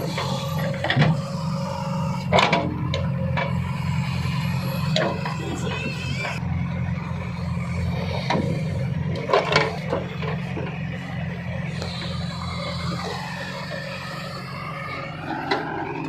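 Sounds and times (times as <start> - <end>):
heavy diesel engine droning: 0.0 - 16.0.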